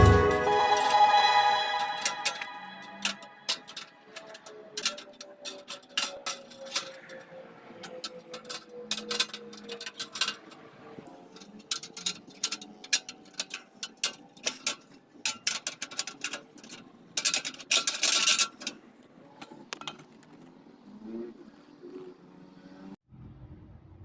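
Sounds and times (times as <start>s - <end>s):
metal clicks and scrapes: 2.0s - 20.9s.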